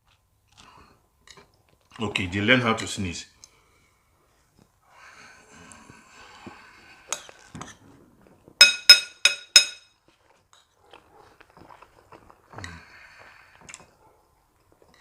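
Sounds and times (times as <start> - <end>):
faint eating sounds: 0.0 - 8.6, 10.0 - 15.0
cutlery clinking against a plate: 8.6 - 9.8.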